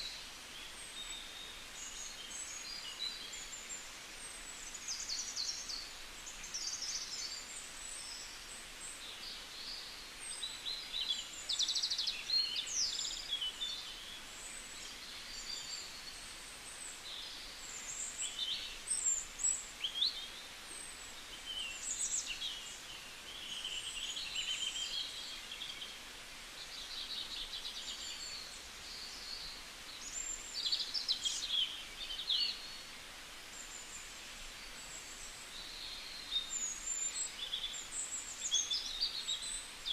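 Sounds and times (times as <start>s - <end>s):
faint outdoor hiss: 0.0s - 39.9s
songbirds chirping and trilling: 0.0s - 39.9s.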